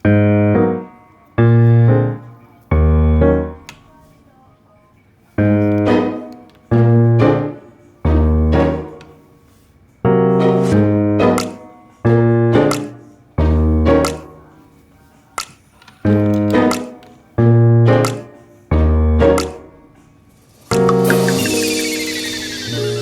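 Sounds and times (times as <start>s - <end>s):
slow piano chords: 0.0s - 4.0s, 5.4s - 9.4s, 10.0s - 14.9s, 16.0s - 23.0s.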